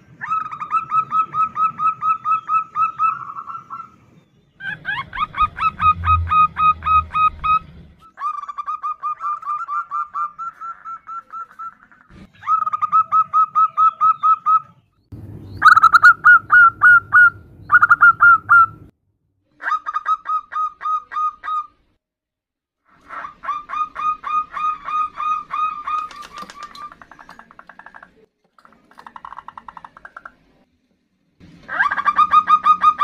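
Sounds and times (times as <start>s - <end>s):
doves cooing rapidly: 0.2s - 14.6s, 23.0s - 28.2s.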